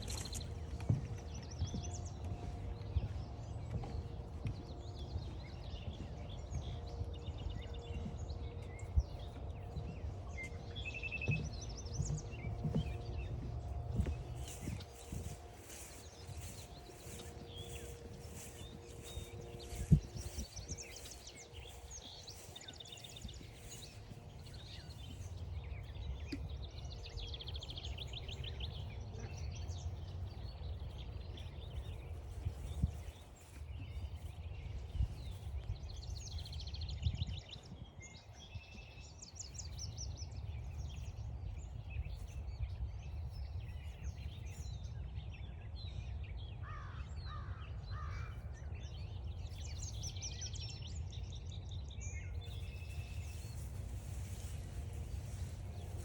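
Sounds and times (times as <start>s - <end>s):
songbirds chirping and trilling: 0.0s - 56.0s
steady low rumble: 0.0s - 56.0s.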